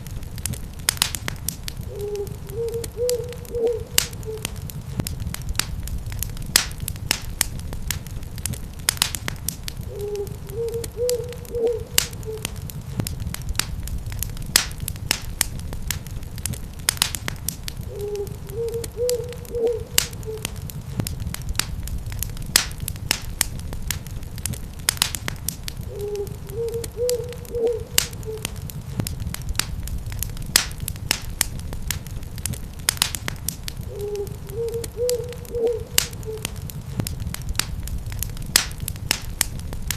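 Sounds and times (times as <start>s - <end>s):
wood fire crackling and popping: 0.0s - 39.9s
low rumble: 1.3s - 8.8s, 25.7s - 32.6s
owl hooting: 1.9s - 4.6s, 9.9s - 12.6s, 17.9s - 20.6s, 25.9s - 28.6s, 33.9s - 36.6s.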